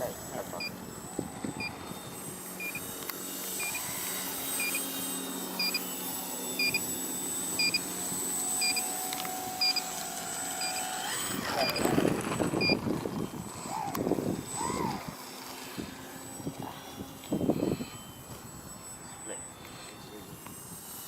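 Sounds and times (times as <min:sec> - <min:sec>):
electronic double beep: 0:02.6 - 0:02.8, 0:06.6 - 0:06.8, 0:07.6 - 0:07.8.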